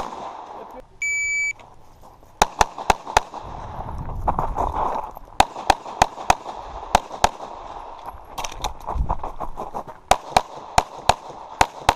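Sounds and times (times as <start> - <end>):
pistol shots: 0.0 - 0.7, 2.4 - 3.5, 5.4 - 7.9, 10.1 - 11.9.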